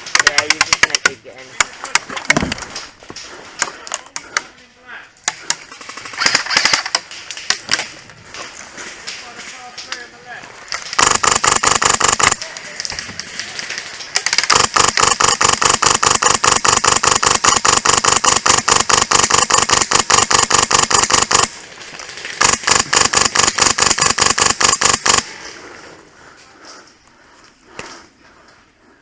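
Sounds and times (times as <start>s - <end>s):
airsoft rifle firing full auto: 10.9s - 12.4s, 14.2s - 21.6s, 22.4s - 25.3s.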